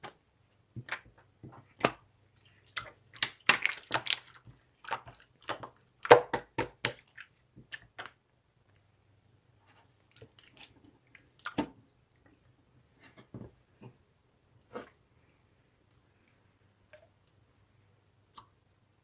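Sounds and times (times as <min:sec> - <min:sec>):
sharp clicks and squishes: 0:02.7 - 0:08.2.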